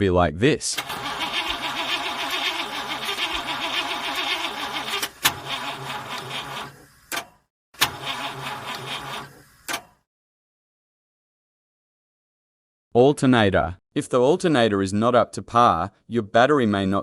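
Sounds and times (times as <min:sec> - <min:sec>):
car engine cranking: 0:00.8 - 0:09.9
starter sharp click: 0:09.7 - 0:10.0.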